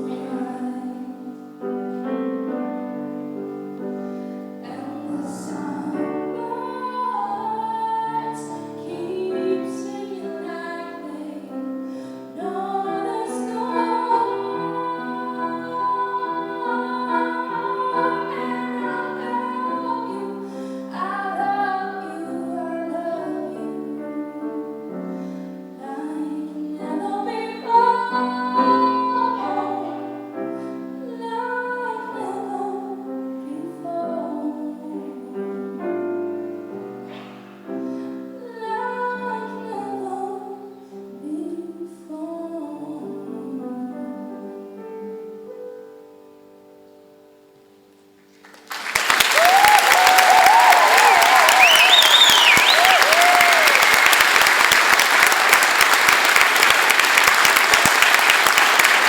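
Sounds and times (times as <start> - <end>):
woman singing slow song: 0.0 - 1.8, 4.6 - 24.6, 25.8 - 30.3, 30.9 - 36.0, 38.4 - 44.6, 49.4 - 53.9
piano chords: 0.0 - 47.8.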